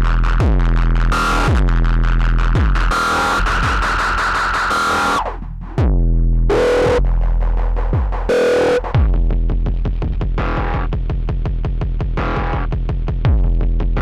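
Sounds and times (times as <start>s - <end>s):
sustained synth tones: 6.5s - 7.0s, 8.3s - 9.0s
deep kick-like hits: 8.9s - 9.4s.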